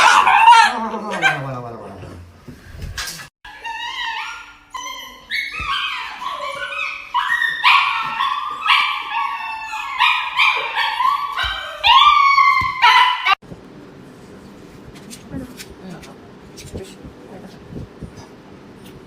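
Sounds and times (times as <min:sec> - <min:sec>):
dog howling and crying: 0:00.0 - 0:01.6, 0:03.5 - 0:13.4.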